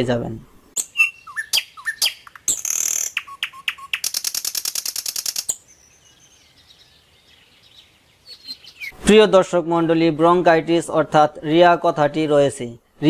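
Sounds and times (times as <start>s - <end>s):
bird rattling trill: 0.8s - 5.9s
small bird chirping: 0.8s - 9.0s.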